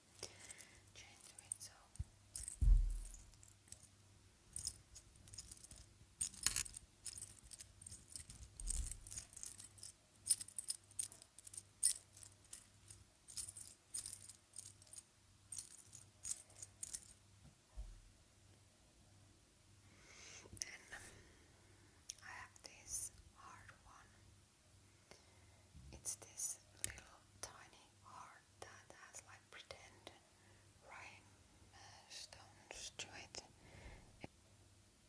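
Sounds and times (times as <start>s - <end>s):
metal chain jingling: 2.3s - 3.9s, 4.5s - 17.2s
soft thump: 2.6s - 3.2s.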